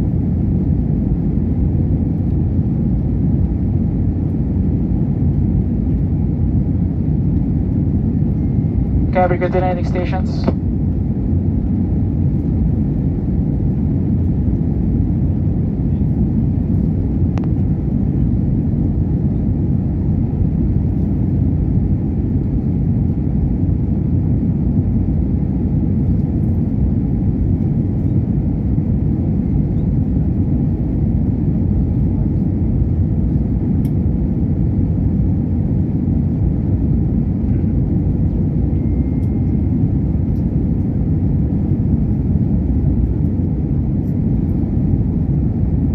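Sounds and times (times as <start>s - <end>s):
airliner engines and airflow rumble: 0.0s - 45.9s
faint steady hum: 5.3s - 15.2s.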